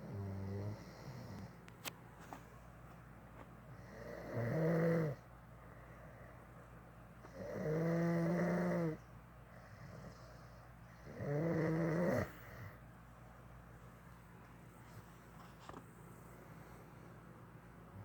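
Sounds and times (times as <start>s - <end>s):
man snoring: 0.0s - 1.4s, 3.8s - 5.2s, 7.3s - 9.0s, 11.0s - 12.4s.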